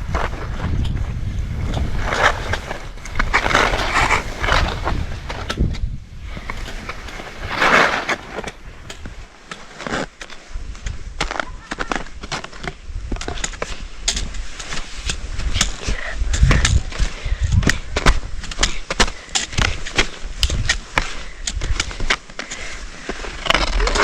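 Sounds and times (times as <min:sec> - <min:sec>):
wind rumbling on microphone: 0:00.0 - 0:09.3, 0:12.7 - 0:18.8, 0:19.5 - 0:22.1
skis scraping over snow: 0:00.0 - 0:24.0.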